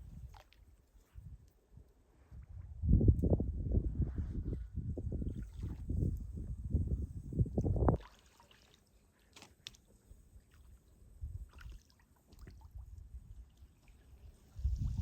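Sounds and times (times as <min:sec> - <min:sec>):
small water splashes: 0:00.1 - 0:01.0, 0:05.2 - 0:06.4, 0:07.5 - 0:15.0
wind buffeting microphone: 0:02.3 - 0:08.0, 0:14.5 - 0:15.0.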